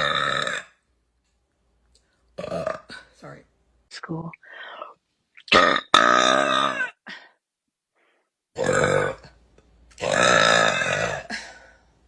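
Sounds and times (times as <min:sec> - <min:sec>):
woman burping: 0:05.4 - 0:07.2, 0:08.6 - 0:09.4, 0:10.0 - 0:11.7.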